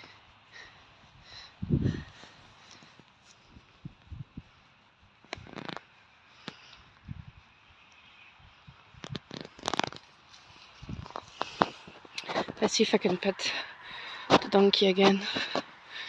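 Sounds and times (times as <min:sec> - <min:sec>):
rustling: 0:01.9 - 0:07.5, 0:09.0 - 0:15.7
crackling clicks: 0:05.2 - 0:06.8, 0:09.0 - 0:13.2.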